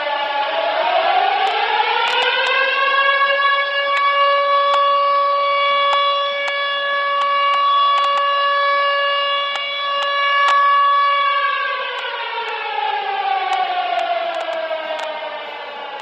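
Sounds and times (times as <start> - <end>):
goal horn air-raid siren: 0.0 - 16.0
faint sharp clicks: 7.2 - 8.3, 13.5 - 15.2.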